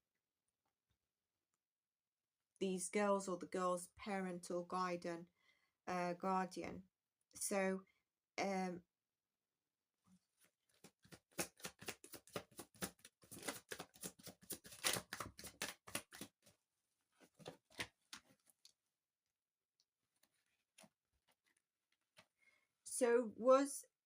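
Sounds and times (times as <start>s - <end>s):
cards being shuffled: 10.7s - 16.5s.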